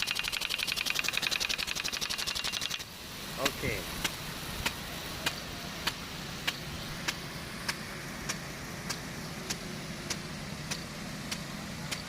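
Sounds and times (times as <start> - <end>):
sprinkler drive arm clicking: 0.0 - 2.8
sprinkler water rush: 0.0 - 12.0.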